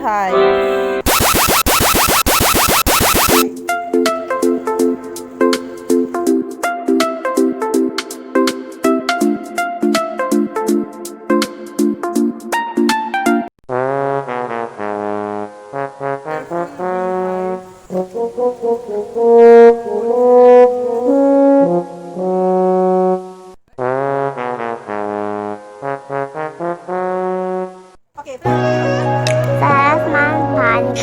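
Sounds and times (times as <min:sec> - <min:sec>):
brass melody: 0:01.0 - 0:03.4, 0:13.7 - 0:30.9.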